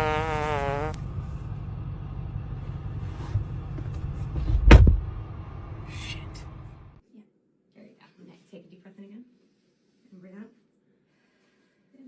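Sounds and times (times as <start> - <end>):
car rumble: 0.0 - 7.0.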